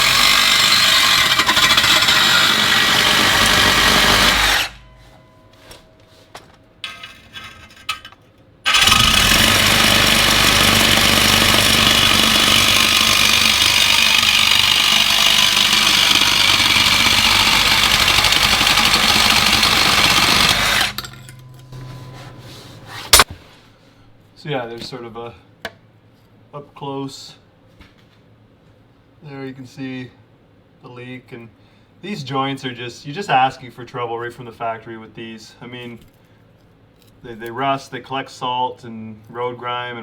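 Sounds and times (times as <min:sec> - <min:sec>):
power tool cutting steel pipe: 0:00.0 - 0:04.9, 0:08.7 - 0:21.5.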